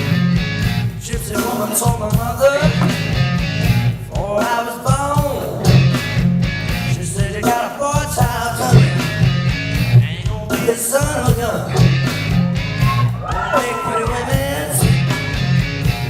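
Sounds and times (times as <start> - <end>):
guitar-led rock music: 0.0 - 16.0
woman singing: 12.9 - 15.2.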